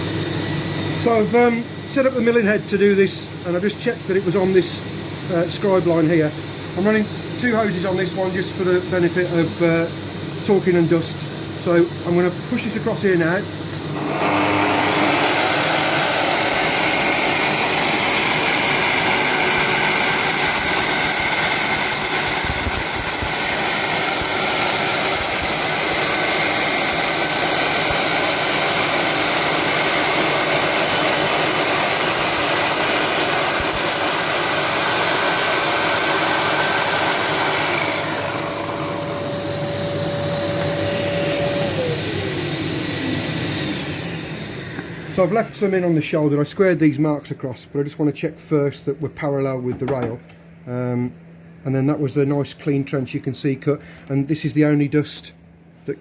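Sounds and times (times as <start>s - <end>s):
dust extraction drawing air: 3.0s - 45.8s
power saw whining: 13.7s - 44.1s.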